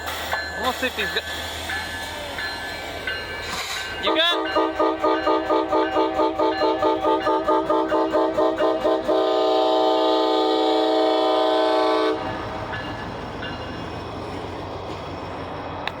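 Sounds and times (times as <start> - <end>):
train rumble: 0.0 - 16.0
locomotive air horn: 4.1 - 12.3.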